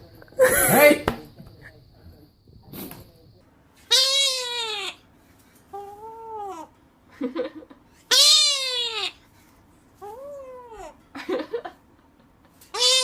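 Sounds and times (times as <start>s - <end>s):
cat meowing: 3.9s - 5.0s, 8.1s - 9.2s, 12.8s - 13.0s.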